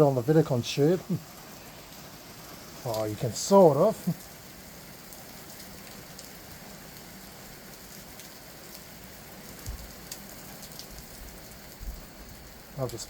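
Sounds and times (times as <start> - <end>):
heavy rain pouring: 0.0 - 13.0
faint drips: 0.1 - 7.1.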